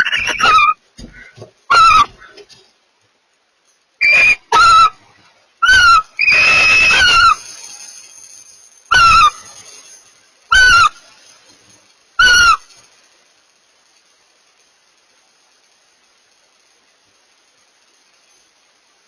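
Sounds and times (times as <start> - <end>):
barn owls calling: 0.0 - 2.4, 4.0 - 5.0, 5.6 - 7.8, 8.9 - 9.9, 10.5 - 11.2, 12.2 - 12.8.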